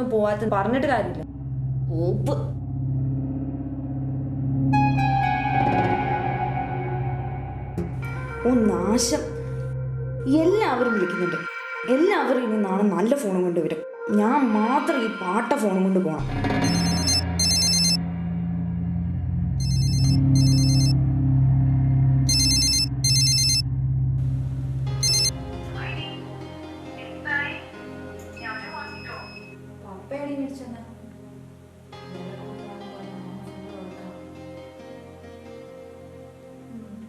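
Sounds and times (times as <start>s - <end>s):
soft background music: 4.7s - 18.0s, 24.3s - 37.0s
mobile phone ringtone warbling: 16.6s - 18.0s, 19.6s - 20.9s, 22.3s - 23.6s, 25.0s - 25.3s.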